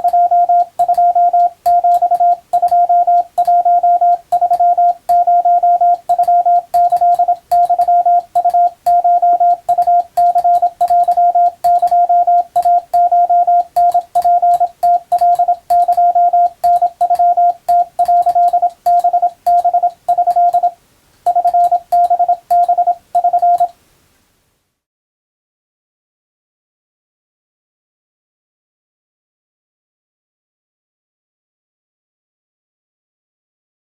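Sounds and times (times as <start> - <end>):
morse code tone: 0.0 - 23.7.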